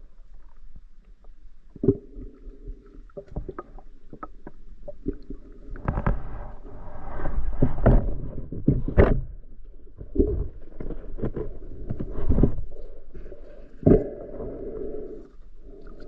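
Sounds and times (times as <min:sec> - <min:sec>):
muffled underwater rumble: 0:00.0 - 0:16.0
underwater knocks and clicks: 0:03.1 - 0:06.6, 0:07.5 - 0:12.8.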